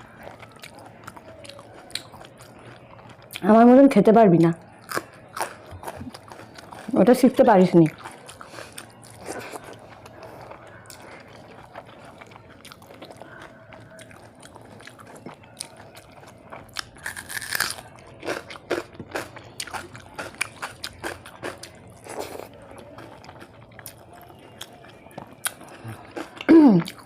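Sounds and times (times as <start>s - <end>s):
person chewing: 0.0s - 3.4s, 4.8s - 7.0s, 7.8s - 27.0s
crunches of crisp food: 7.8s - 27.0s.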